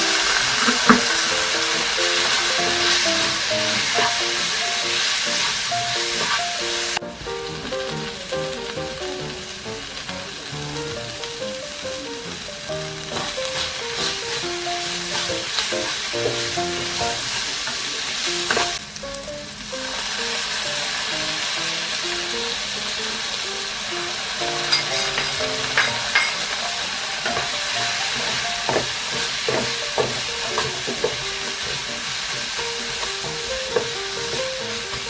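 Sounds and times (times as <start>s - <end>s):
spatula tapping pan: 0.0s - 6.4s, 13.0s - 17.1s, 24.5s - 26.6s, 27.2s - 35.0s
spatula stirring: 0.0s - 7.0s, 12.2s - 18.8s, 24.5s - 35.0s
food sizzling in oil: 0.0s - 35.0s.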